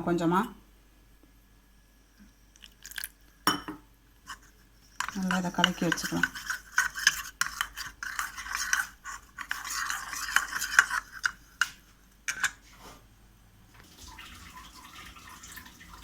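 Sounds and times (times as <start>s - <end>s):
spoon scraping and clinking bowl: 2.9s - 12.6s.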